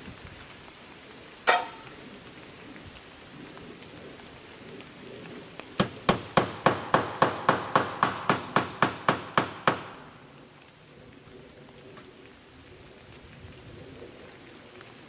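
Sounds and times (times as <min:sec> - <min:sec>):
hammer driving a nail: 0:05.8 - 0:10.0.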